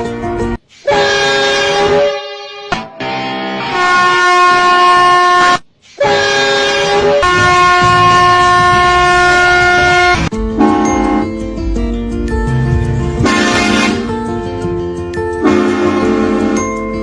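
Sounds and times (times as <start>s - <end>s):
electric horn blasts: 0.8s - 11.4s, 13.2s - 14.1s, 15.4s - 17.0s.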